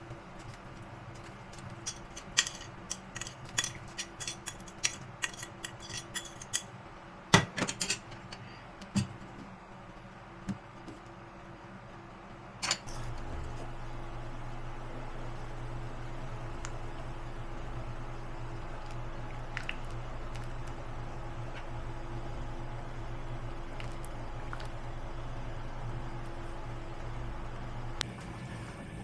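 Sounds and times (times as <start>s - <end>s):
metal utensil clinking on pot: 1.9s - 6.7s.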